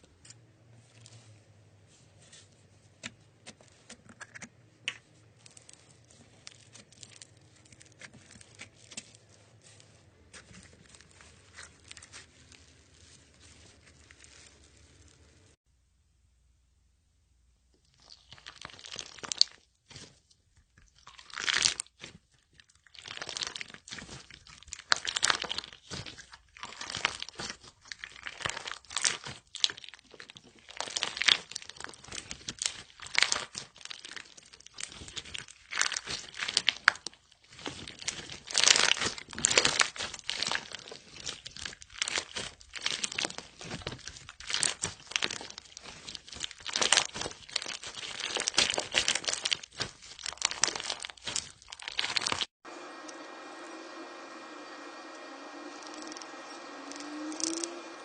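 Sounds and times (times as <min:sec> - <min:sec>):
slime crackling when squeezed: 0:05.0 - 0:15.6, 0:18.0 - 0:19.6, 0:22.8 - 0:52.5, 0:56.8 - 0:57.8.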